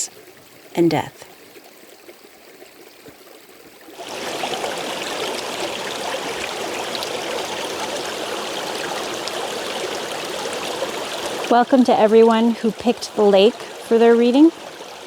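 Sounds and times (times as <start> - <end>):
lake water washing on shore: 3.9 - 15.0.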